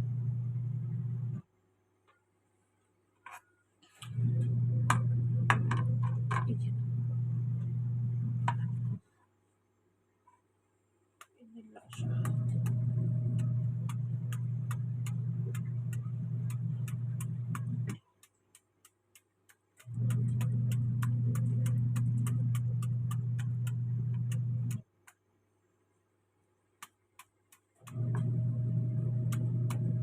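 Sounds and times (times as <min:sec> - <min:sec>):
motor humming: 0:11.9 - 0:18.0, 0:19.8 - 0:24.8, 0:27.8 - 0:30.0
steady ticking: 0:11.9 - 0:25.2.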